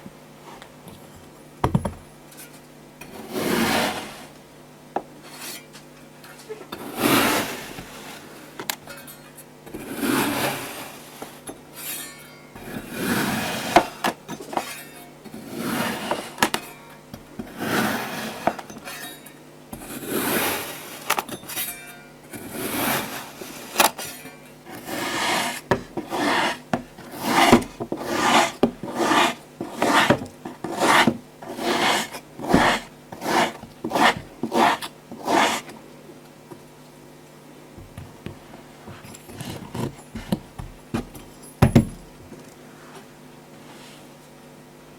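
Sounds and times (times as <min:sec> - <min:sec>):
knife scraping kinetic sand: 0:03.1 - 0:04.3, 0:06.8 - 0:08.5, 0:09.8 - 0:11.4, 0:12.7 - 0:14.0, 0:15.4 - 0:16.5, 0:17.5 - 0:18.7, 0:19.9 - 0:21.2, 0:22.4 - 0:24.0, 0:24.7 - 0:35.7.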